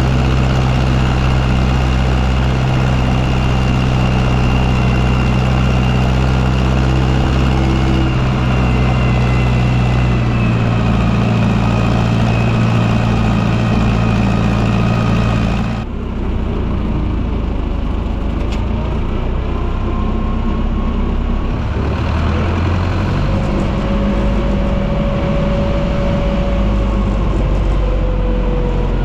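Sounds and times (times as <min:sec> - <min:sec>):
tractor diesel engine running: 0:00.0 - 0:29.0.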